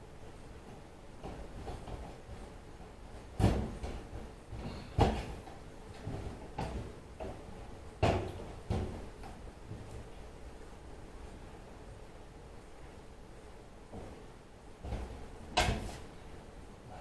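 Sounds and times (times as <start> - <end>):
dryer panel knocking and clunking: 3.3 - 9.8, 14.8 - 16.0.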